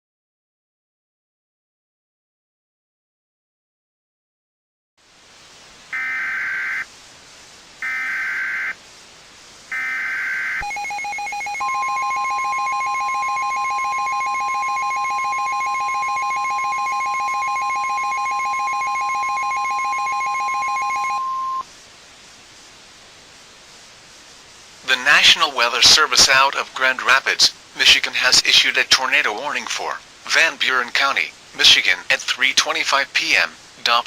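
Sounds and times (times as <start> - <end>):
data tone bursts: 9.7 - 21.7
steady warning tone: 9.7 - 21.7.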